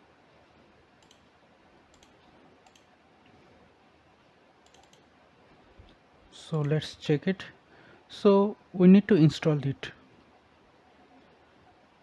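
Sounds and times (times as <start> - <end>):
computer mouse clicks: 1.0 - 1.3, 1.9 - 2.9, 4.6 - 5.1.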